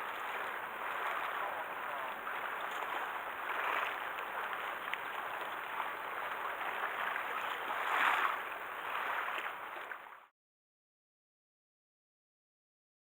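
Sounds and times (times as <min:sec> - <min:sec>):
sea water sloshing and splashing: 0:00.0 - 0:10.3.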